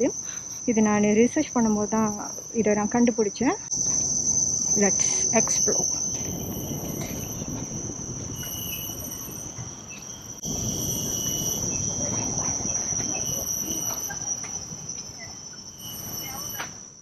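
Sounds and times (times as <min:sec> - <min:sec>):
insects droning: 0:00.0 - 0:17.0
shrill insect tones: 0:00.0 - 0:17.0
low rumbling hiss: 0:06.0 - 0:14.2.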